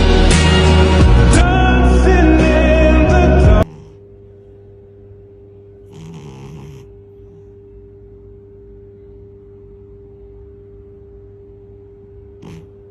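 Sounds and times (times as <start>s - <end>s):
steady low hum: 0.0s - 12.9s
cat snoring: 3.6s - 4.0s, 5.8s - 7.6s, 12.3s - 12.9s.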